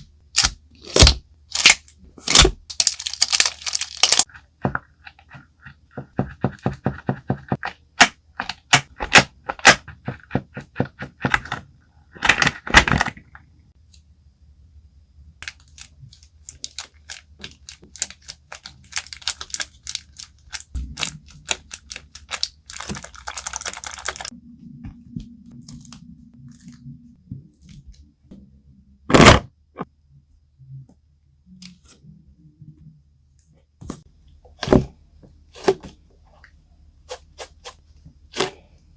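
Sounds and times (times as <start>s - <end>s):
crinkling: 0.3s - 6.6s, 15.4s - 24.3s.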